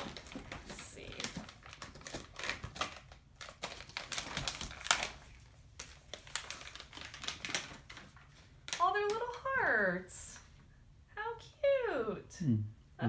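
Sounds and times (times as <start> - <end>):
bag crinkling and rustling: 0.0 - 8.8.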